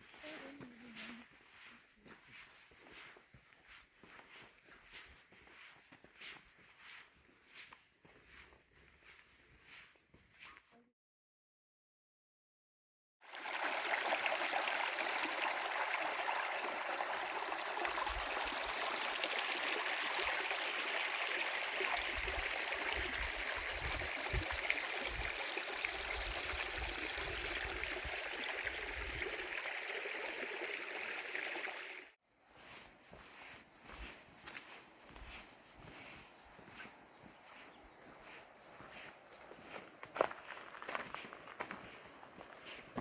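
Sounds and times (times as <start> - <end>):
stream of water rushing: 13.2 - 32.2.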